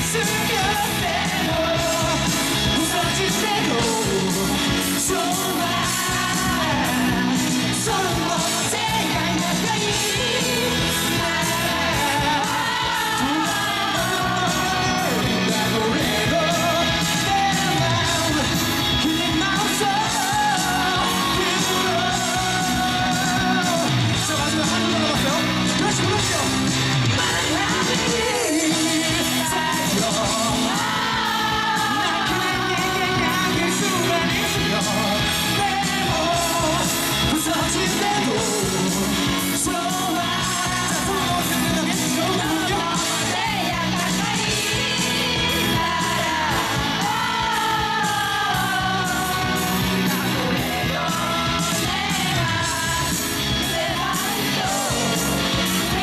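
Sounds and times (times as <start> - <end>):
live rock band playing: 0.0 - 56.0
person singing: 0.0 - 56.0.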